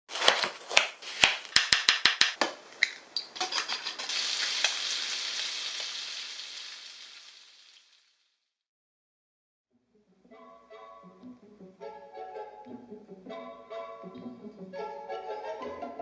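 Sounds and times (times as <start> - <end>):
food sizzling in hot pan: 3.4 - 8.3.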